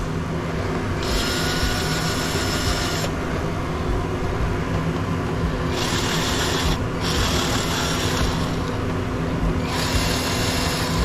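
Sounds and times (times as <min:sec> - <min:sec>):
power drill whining: 0:00.9 - 0:03.2, 0:05.6 - 0:08.8, 0:09.6 - 0:11.0.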